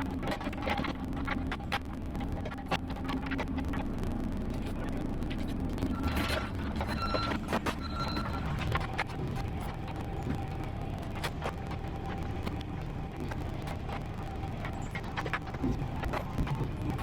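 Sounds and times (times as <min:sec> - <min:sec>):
constant whine: 0:00.0 - 0:17.0.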